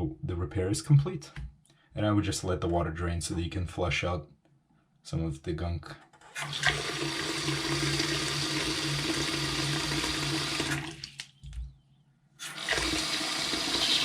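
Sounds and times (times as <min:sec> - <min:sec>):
faucet water running into sink: 0:06.4 - 0:11.2, 0:12.4 - 0:14.0.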